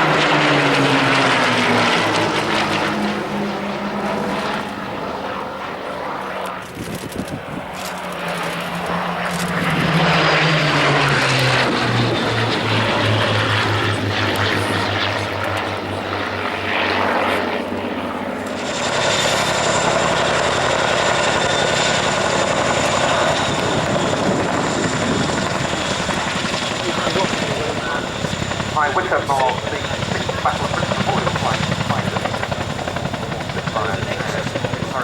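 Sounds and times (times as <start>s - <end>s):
helicopter rotors: 0.0s - 35.0s
helicopter turbine whine: 0.0s - 35.0s
propeller aircraft flying past: 0.0s - 35.0s.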